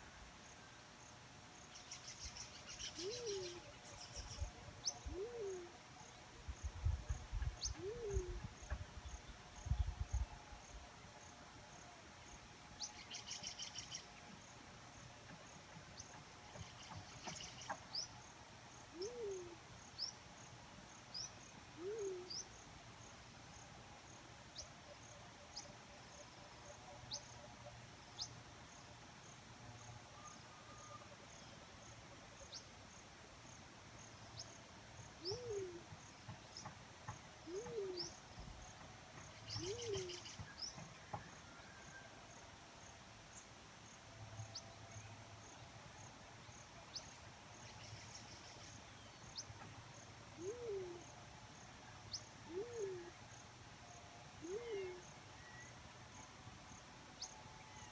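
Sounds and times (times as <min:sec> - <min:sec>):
dove cooing: 0:03.0 - 0:03.6, 0:05.1 - 0:05.7, 0:07.7 - 0:08.5, 0:18.9 - 0:19.6, 0:21.8 - 0:22.4, 0:35.2 - 0:35.9, 0:37.4 - 0:38.1, 0:39.6 - 0:40.2, 0:50.4 - 0:51.0, 0:52.5 - 0:53.2, 0:54.4 - 0:55.0.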